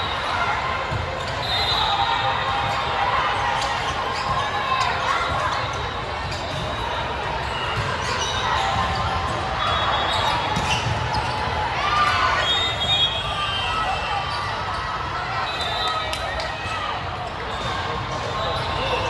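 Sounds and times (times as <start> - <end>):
sneakers squeaking on court: 5.6 - 11.6.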